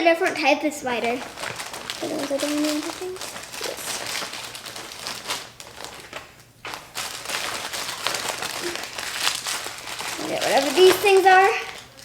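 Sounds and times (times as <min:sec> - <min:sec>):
plastic packaging crinkling: 0:00.8 - 0:12.0.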